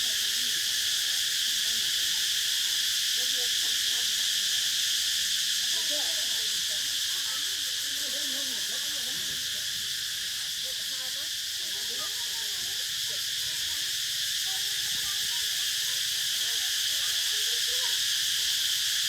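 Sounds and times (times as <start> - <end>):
cicadas droning: 0.0 - 19.0.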